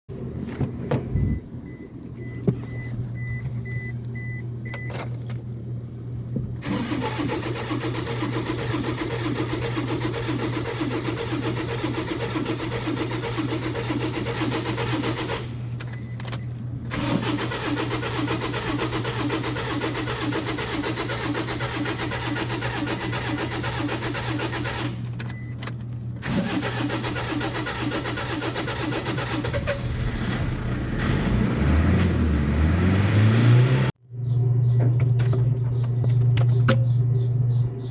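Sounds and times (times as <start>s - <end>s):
diesel engine cranking on starter: 6.6s - 34.0s.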